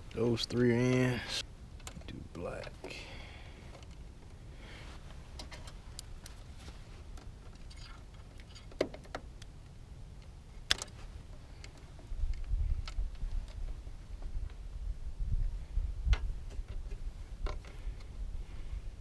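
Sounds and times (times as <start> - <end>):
low steady rumble: 0.0 - 19.0
wire clicking into terminals: 10.2 - 11.0.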